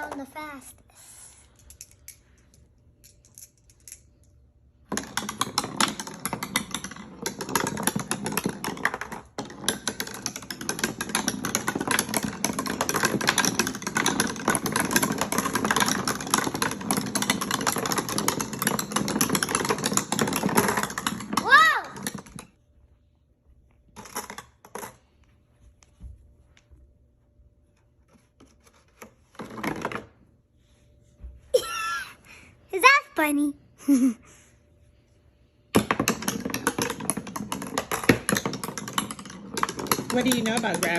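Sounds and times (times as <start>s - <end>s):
marbles rattling down a marble run: 4.9s - 22.5s, 35.8s - 40.9s.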